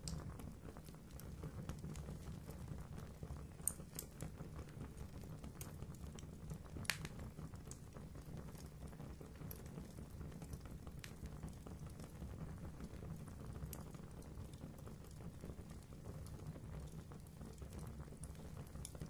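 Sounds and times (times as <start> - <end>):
fire crackling in a fireplace: 0.0 - 19.0.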